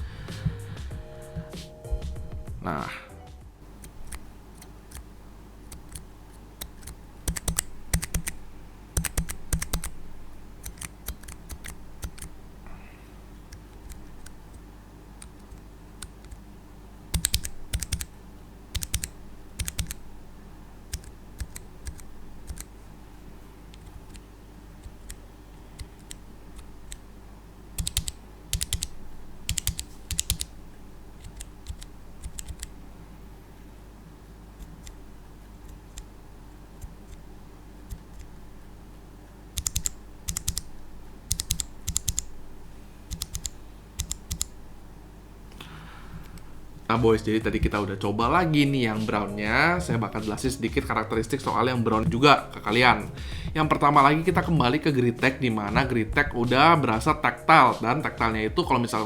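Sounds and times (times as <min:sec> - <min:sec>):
mechanical keyboard keystrokes: 0:03.7 - 0:12.4, 0:17.1 - 0:18.1, 0:18.7 - 0:20.1, 0:20.9 - 0:22.7, 0:24.8 - 0:27.0, 0:27.8 - 0:30.6, 0:31.2 - 0:32.8, 0:39.6 - 0:42.4, 0:43.1 - 0:44.6.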